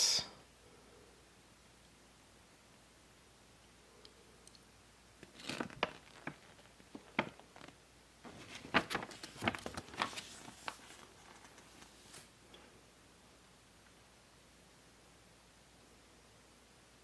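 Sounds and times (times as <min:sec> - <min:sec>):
packaging crinkling and crackling: 0:05.2 - 0:12.3.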